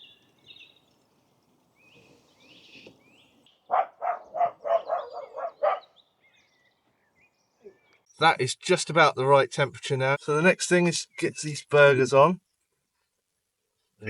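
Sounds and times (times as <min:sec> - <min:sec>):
faint birdsong chirping: 0:00.0 - 0:14.0
dog barking: 0:03.7 - 0:06.0.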